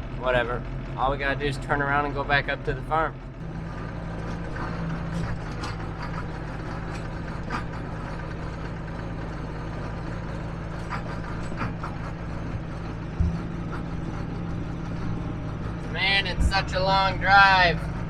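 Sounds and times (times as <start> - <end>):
tractor diesel engine running: 0.0 - 18.0
light rattles: 3.2 - 17.1.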